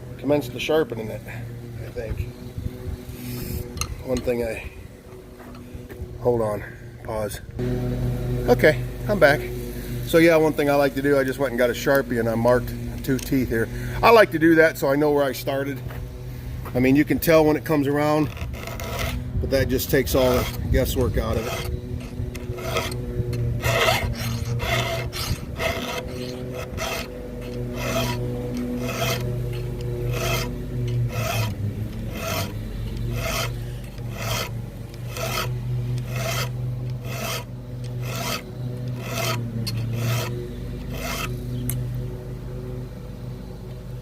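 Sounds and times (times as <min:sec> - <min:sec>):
steady low drone: 0:00.0 - 0:44.0
file rasping on chainsaw chain: 0:17.3 - 0:41.4.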